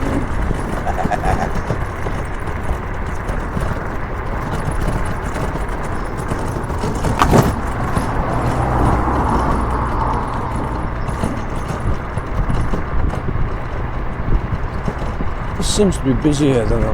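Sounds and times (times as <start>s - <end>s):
vehicle road and engine noise: 0.0s - 16.9s
low hum: 4.4s - 14.1s.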